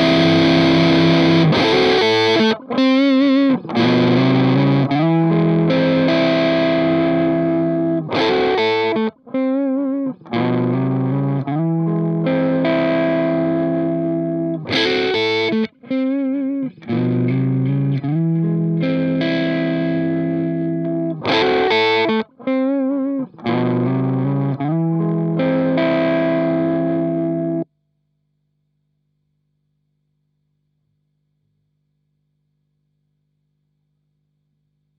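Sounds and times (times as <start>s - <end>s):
distorted electric guitar: 0.0s - 27.6s.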